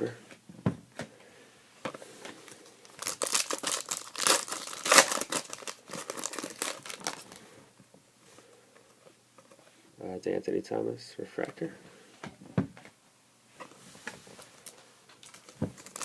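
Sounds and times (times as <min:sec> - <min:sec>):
wrapper crinkling and tearing: 0:02.6 - 0:07.4, 0:14.5 - 0:16.0.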